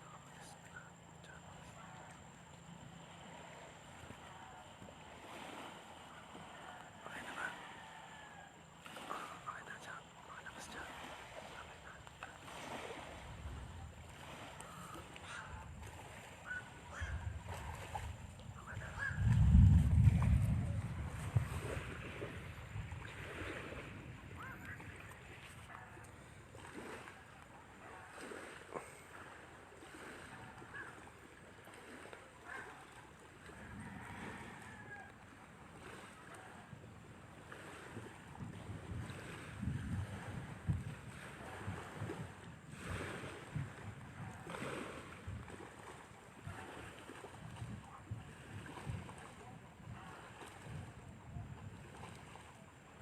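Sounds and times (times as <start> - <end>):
wind gusting over microphone: 12.7 - 25.7, 37.7 - 45.8, 46.4 - 52.2.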